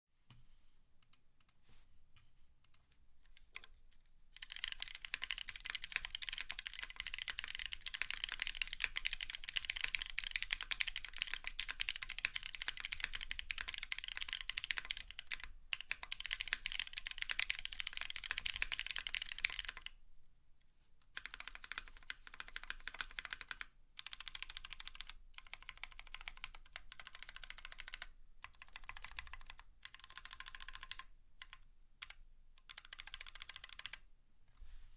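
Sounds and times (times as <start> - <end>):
mechanical keyboard typing: 3.4 - 3.8, 4.4 - 19.9, 21.2 - 34.0.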